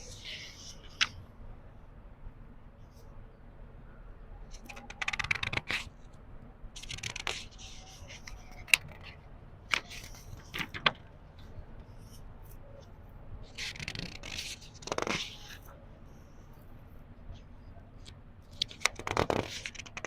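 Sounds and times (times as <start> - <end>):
book pages turning: 0.0 - 1.2, 4.6 - 6.0, 6.8 - 12.2, 12.8 - 15.8, 18.5 - 20.0
sharp paper flicks: 6.8 - 9.1.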